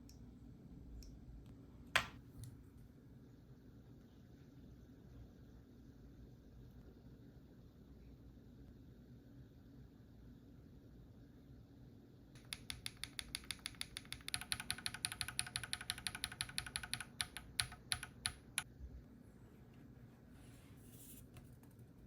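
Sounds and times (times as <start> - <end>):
mechanical keyboard typing: 12.4 - 18.6.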